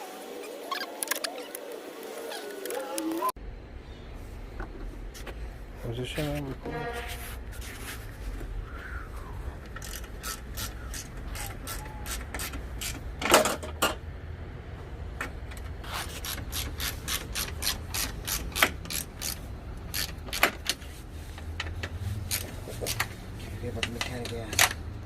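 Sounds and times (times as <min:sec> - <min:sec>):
hand ratchet clicking: 0:09.7 - 0:13.1, 0:15.9 - 0:20.8, 0:21.4 - 0:23.1.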